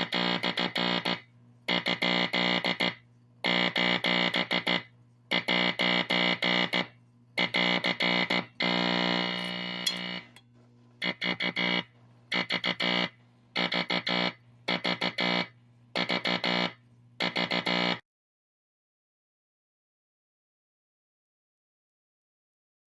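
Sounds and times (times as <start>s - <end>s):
buzzy morse code tone: 0.0s - 10.4s, 11.0s - 18.0s.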